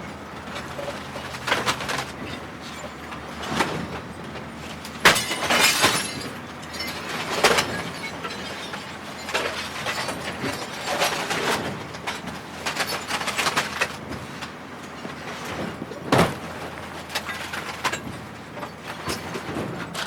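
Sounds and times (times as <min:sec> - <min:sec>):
plastic and glass being smashed: 0:05.0 - 0:13.9.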